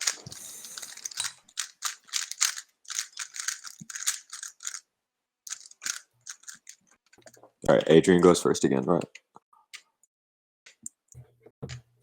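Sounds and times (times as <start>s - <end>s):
speed cube clicking: 0.0s - 4.8s, 5.5s - 6.8s.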